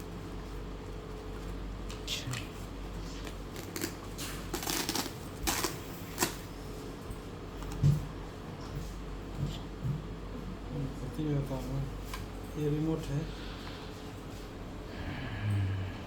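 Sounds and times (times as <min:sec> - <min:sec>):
packaging rustling and crinkling: 0:03.2 - 0:06.4.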